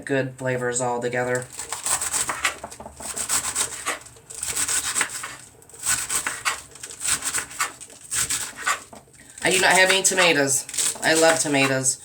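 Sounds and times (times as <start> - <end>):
knife slicing on cutting board: 1.5 - 11.8.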